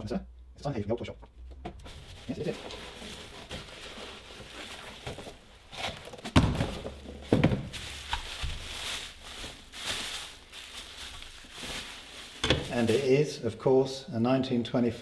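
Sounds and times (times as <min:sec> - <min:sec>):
parcel rustling: 0:01.9 - 0:13.4
dull thuds: 0:06.0 - 0:12.9.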